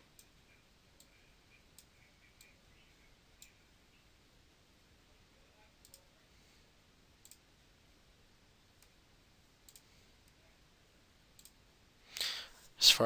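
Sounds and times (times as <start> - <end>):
faint computer mouse clicks: 5.8 - 6.1, 9.6 - 10.4, 11.4 - 11.6.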